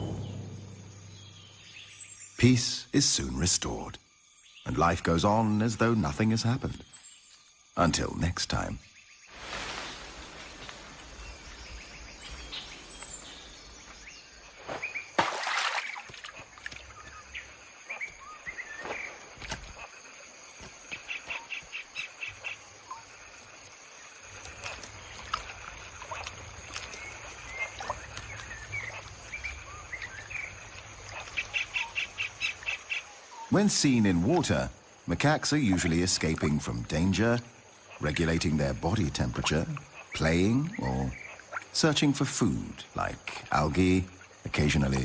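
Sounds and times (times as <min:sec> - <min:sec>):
loud rush of noise: 0:00.0 - 0:01.4
high insect whine: 0:00.0 - 0:45.0.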